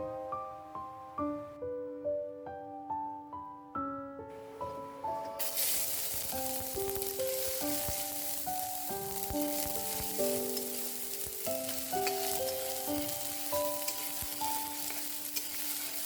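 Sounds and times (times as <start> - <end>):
gentle piano music: 0.0 - 16.0
food sizzling in a pan: 4.4 - 16.0.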